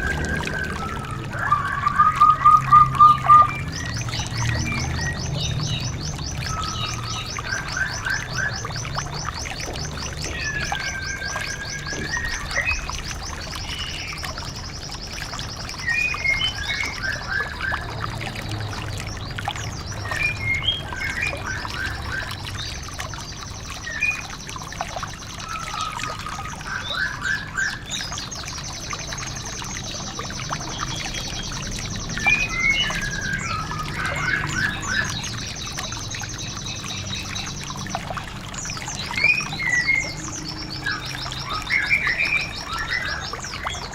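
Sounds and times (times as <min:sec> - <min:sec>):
bird trilling and chirping: 0:00.0 - 0:08.8.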